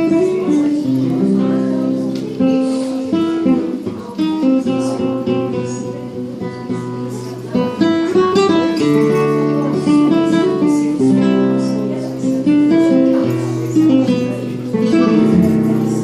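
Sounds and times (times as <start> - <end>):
plucked guitar-like music: 0.0 - 16.0.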